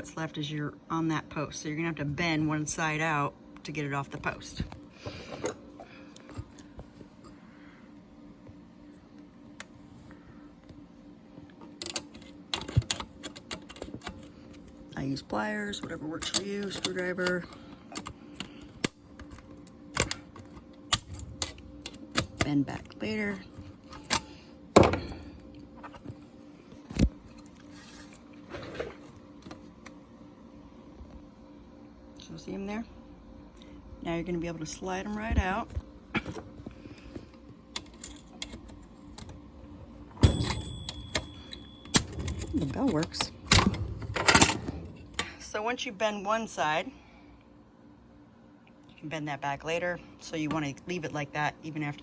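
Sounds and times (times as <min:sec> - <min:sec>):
faint steady hum: 0:00.0 - 0:52.0
metal tool clanking on typewriter: 0:15.8 - 0:18.1, 0:40.2 - 0:45.3.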